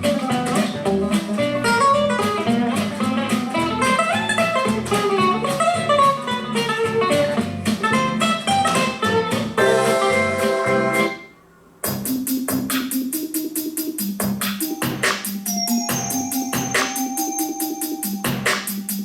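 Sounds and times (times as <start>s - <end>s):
plucked guitar music: 0.0s - 11.2s.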